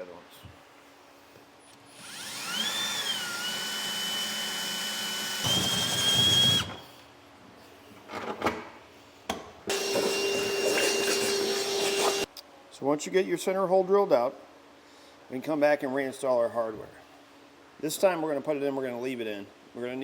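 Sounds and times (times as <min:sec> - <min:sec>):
steady motor running: 0:02.0 - 0:06.7
electric drill drilling: 0:02.0 - 0:06.8, 0:09.7 - 0:12.3.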